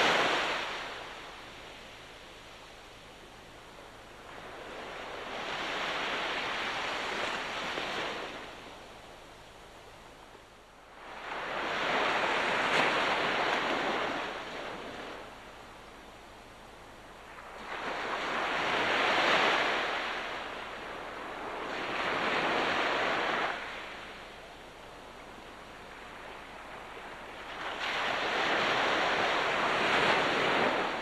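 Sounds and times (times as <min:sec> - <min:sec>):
sea waves breaking: 0:00.0 - 0:01.6.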